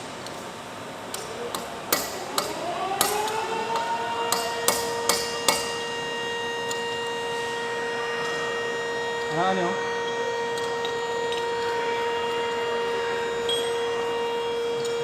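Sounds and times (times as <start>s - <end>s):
machine hum: 0.0s - 15.0s
hammer striking metal: 1.5s - 5.9s.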